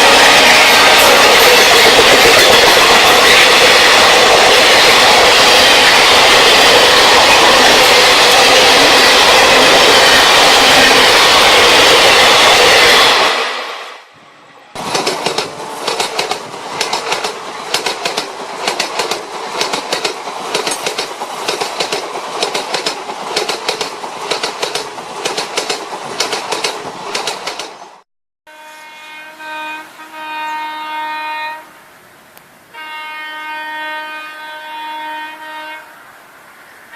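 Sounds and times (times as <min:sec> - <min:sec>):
train wheels clacking on rails: 0:00.0 - 0:13.5, 0:14.8 - 0:28.0
train rumble: 0:00.0 - 0:28.0
multi-tone train whine: 0:00.0 - 0:36.9.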